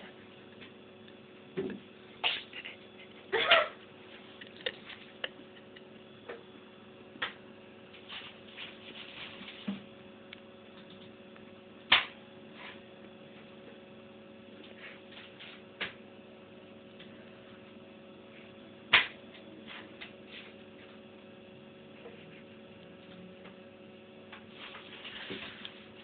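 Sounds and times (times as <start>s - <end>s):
faint steady hum: 0.0s - 26.0s
cat sneezing: 2.2s - 3.8s.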